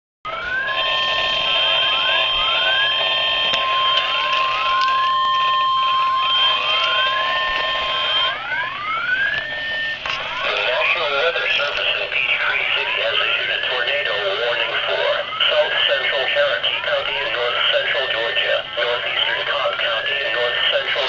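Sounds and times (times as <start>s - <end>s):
electronic alarm whoop tones: 0.3s - 10.5s
steady high tone: 0.3s - 21.0s.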